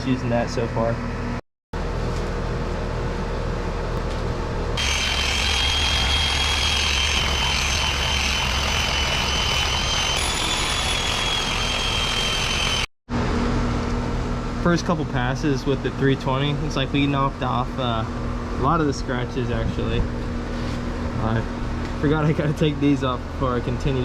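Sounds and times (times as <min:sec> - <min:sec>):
high motor whine: 0:04.4 - 0:15.0
orbital sander humming: 0:04.8 - 0:12.9.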